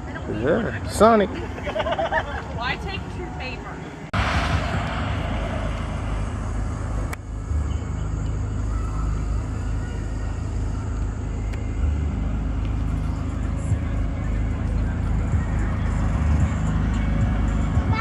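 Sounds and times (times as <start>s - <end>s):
car engine idling: 3.2s - 18.0s
hiss burst: 4.2s - 7.7s.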